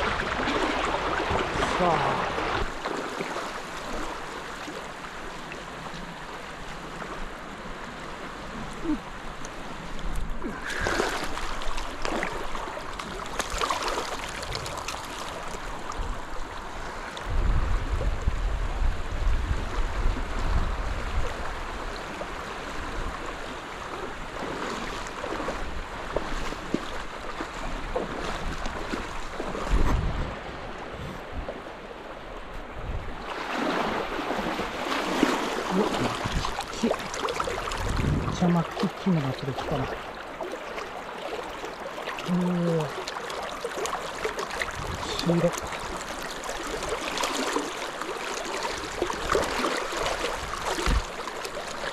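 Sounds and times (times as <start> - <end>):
river rushing over shallows: 0.0 - 51.9
wind buffeting microphone: 17.2 - 23.2, 27.6 - 31.8, 32.5 - 33.3, 35.7 - 38.7, 44.6 - 45.8, 49.1 - 51.2.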